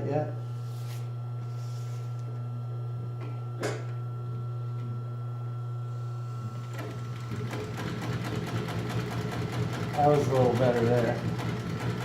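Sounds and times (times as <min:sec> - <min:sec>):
sewing machine motor humming: 0:06.2 - 0:12.0.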